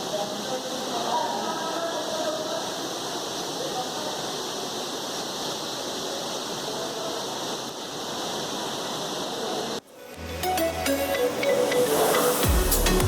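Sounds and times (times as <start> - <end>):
waterfall rushing: 0.0 - 13.0
upbeat electronic music: 10.0 - 13.0.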